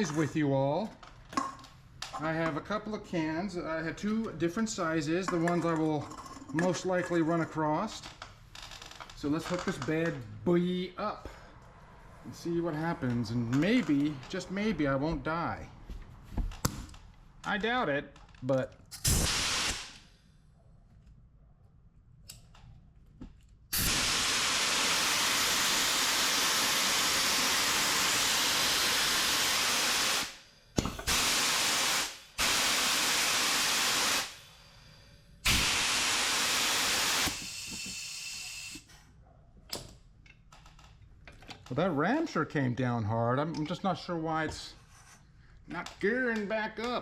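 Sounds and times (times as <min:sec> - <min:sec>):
air hissing: 0:19.0 - 0:20.1, 0:23.7 - 0:38.9.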